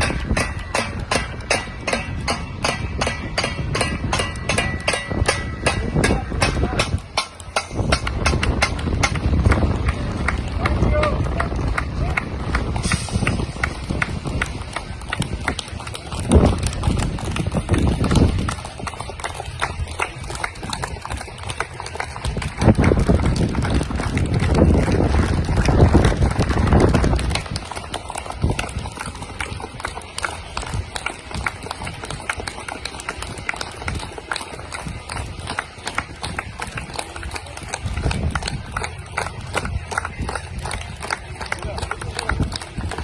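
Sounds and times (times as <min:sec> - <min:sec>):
things banging and clanking: 0:00.0 - 0:09.6
people clapping: 0:00.0 - 0:43.0
wind rumble on microphone: 0:00.0 - 0:43.0
voices: 0:05.1 - 0:43.0.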